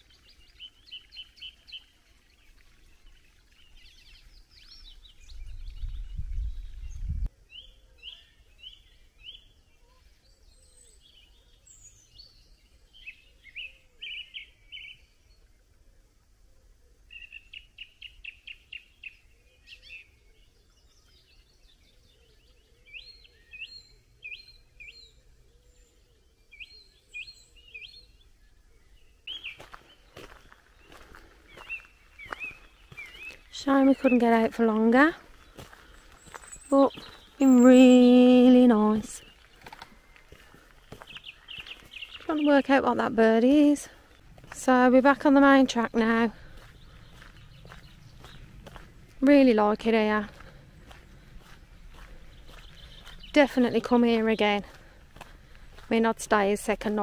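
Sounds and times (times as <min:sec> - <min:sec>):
songbirds chirping and trilling: 0:00.0 - 0:57.0
low rumble: 0:46.7 - 0:49.2.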